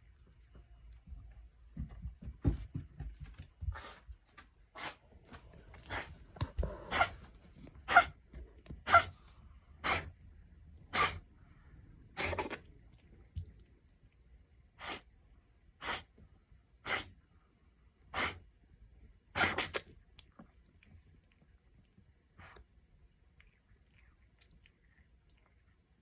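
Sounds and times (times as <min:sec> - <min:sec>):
cat reverse sneezing: 0:04.8 - 0:05.0, 0:09.8 - 0:10.2, 0:10.9 - 0:11.3, 0:12.1 - 0:12.7, 0:14.8 - 0:15.1, 0:15.8 - 0:16.1, 0:16.8 - 0:17.2, 0:18.1 - 0:18.5, 0:19.4 - 0:19.9.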